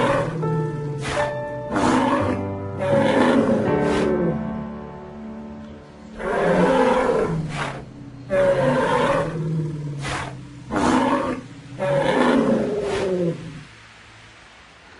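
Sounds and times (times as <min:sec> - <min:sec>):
rough animal calls: 0:00.0 - 0:04.3, 0:06.1 - 0:13.6.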